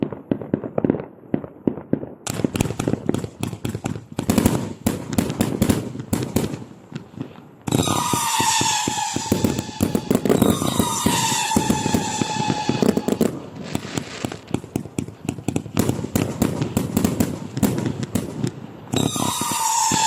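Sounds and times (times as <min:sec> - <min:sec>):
fireworks popping and cracking: 0:00.0 - 0:20.0
whistling tone: 0:07.7 - 0:13.2.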